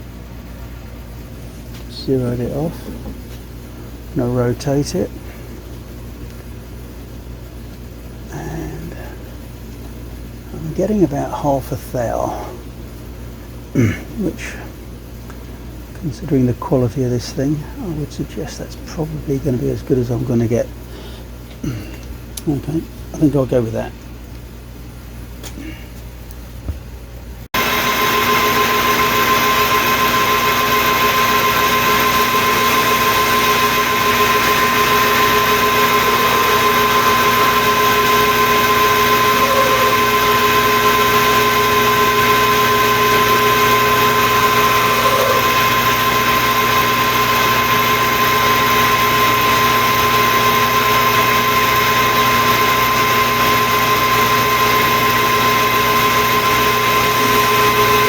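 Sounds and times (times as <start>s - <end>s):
metal lathe gear whine: 1.7s - 3.2s, 4.0s - 5.2s, 10.5s - 12.6s, 16.0s - 20.8s, 27.6s - 58.0s.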